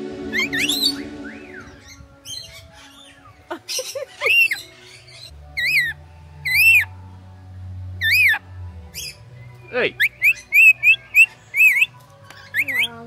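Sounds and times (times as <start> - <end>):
bird squawking: 2.5 - 6.9, 8.0 - 8.4, 9.0 - 13.0.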